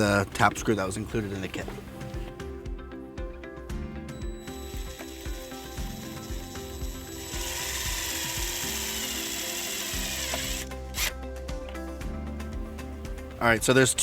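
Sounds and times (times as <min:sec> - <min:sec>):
power drill driving screw into metal: 0:04.5 - 0:11.2.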